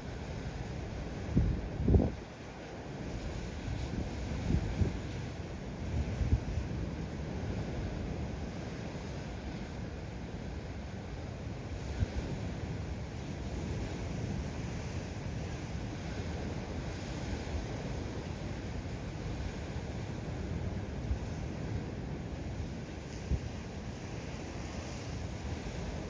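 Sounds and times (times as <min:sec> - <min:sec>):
storm waves washing: 0:14.0 - 0:26.0.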